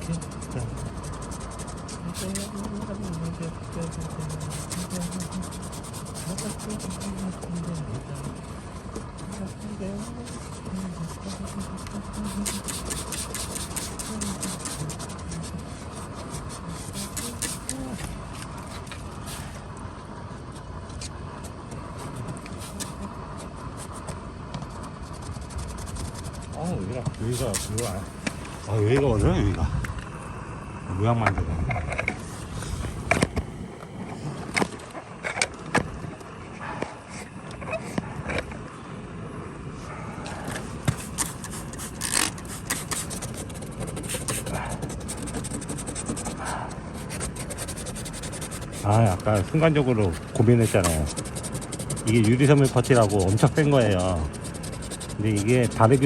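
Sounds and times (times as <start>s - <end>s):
putty spreader scraping plastic: 0.0s - 19.6s, 20.9s - 28.8s, 40.5s - 56.0s
motor vehicle rumble: 0.0s - 52.2s.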